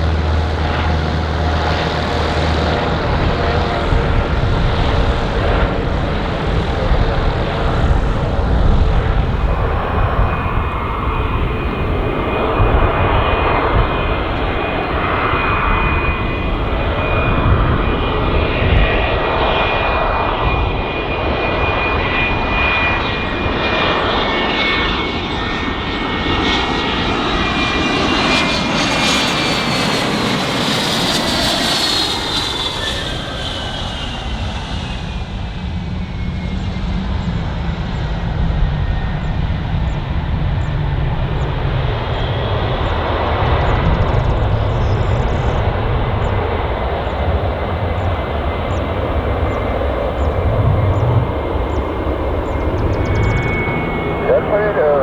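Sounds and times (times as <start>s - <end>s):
deep engine rumble: 0.0s - 21.4s, 37.7s - 55.0s
aircraft engine whine: 0.0s - 55.0s.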